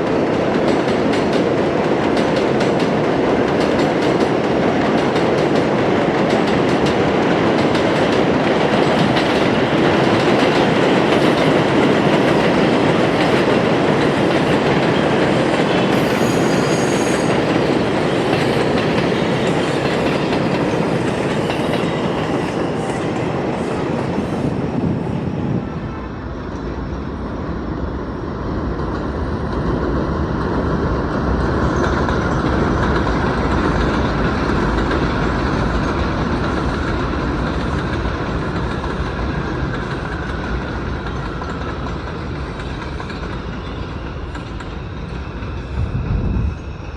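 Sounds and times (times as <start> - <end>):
train wheels clacking over rail joints: 0.1 - 23.4, 31.3 - 45.7
train wheel squeal: 14.7 - 24.7, 31.6 - 46.9.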